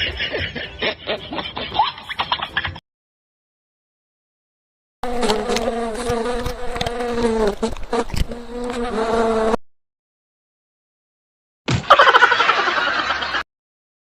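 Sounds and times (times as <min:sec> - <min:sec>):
flying insect buzzing: 0:05.0 - 0:09.6.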